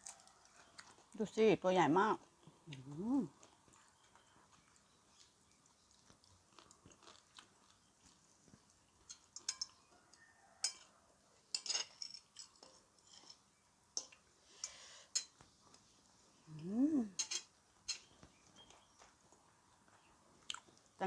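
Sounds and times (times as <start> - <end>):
crisp food crunching: 0.0 - 1.4, 2.2 - 9.6
chewing: 0.0 - 1.5, 2.2 - 11.0, 17.9 - 21.0.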